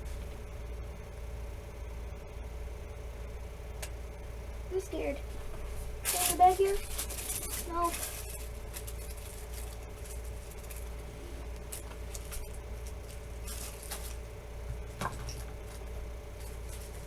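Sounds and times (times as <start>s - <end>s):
steady low hum: 0.0s - 17.0s
objects rustling and clicking: 5.4s - 17.0s.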